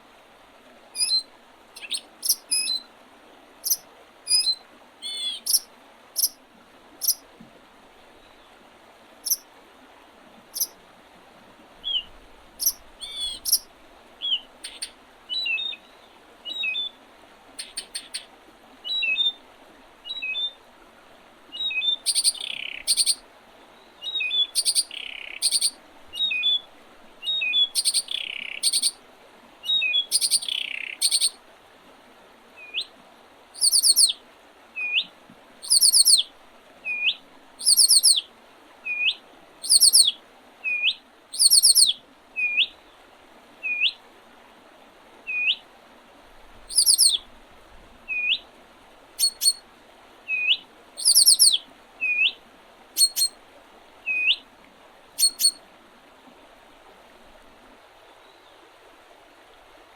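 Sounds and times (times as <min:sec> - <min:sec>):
harsh bird calls: 0:03.7 - 0:05.6, 0:11.8 - 0:13.6, 0:14.2 - 0:15.8, 0:24.1 - 0:26.6, 0:33.6 - 0:34.1, 0:35.6 - 0:36.2, 0:40.7 - 0:42.6, 0:46.7 - 0:47.2, 0:50.4 - 0:52.3, 0:55.2 - 0:55.6
bird short hooked whistle: 0:33.6 - 0:34.1, 0:35.6 - 0:36.2, 0:46.7 - 0:47.2, 0:49.2 - 0:49.6, 0:50.4 - 0:52.2, 0:53.0 - 0:53.3, 0:55.2 - 0:55.6.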